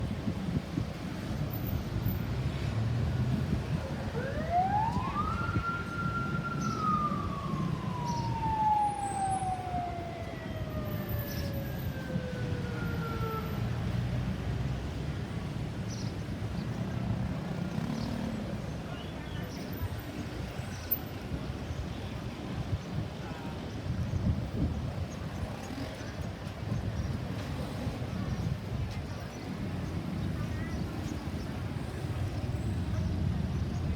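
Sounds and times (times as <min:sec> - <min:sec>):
road traffic rumble: 0:00.0 - 0:33.9
ambulance siren wail: 0:03.8 - 0:14.0.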